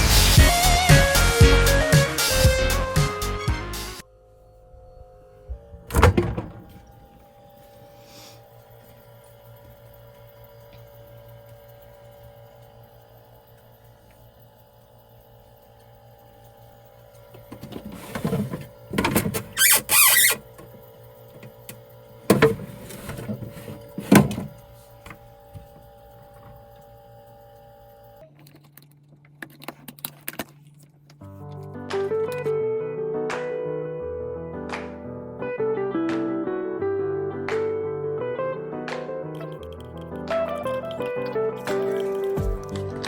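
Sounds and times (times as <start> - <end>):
electrical hum: 4.0 - 28.3
knocks and scraping handling noises: 17.4 - 20.5, 22.3 - 25.7.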